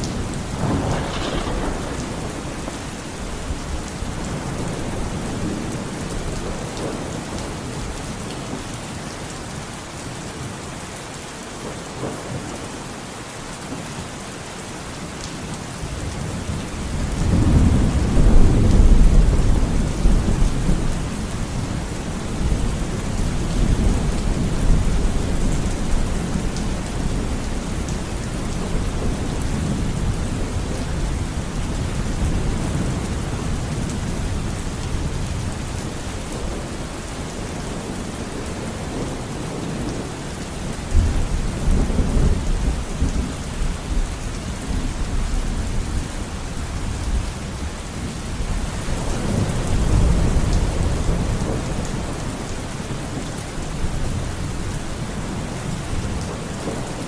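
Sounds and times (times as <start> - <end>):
rolling thunder: 0.0 - 7.8, 16.8 - 36.8
steady rain: 0.0 - 57.0.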